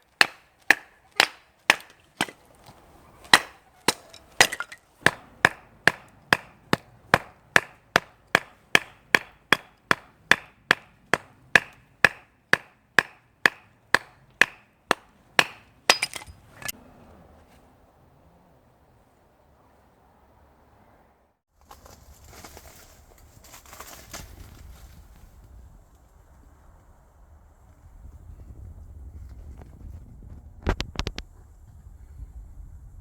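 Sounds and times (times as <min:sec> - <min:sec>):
wood striking wood: 0:00.0 - 0:16.7.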